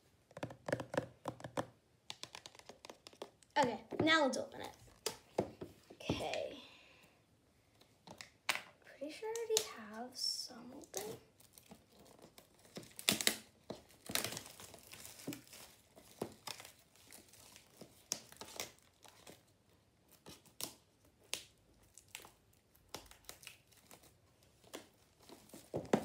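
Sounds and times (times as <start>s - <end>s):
packaging tearing and crinkling: 10.9s - 19.5s, 20.1s - 26.0s.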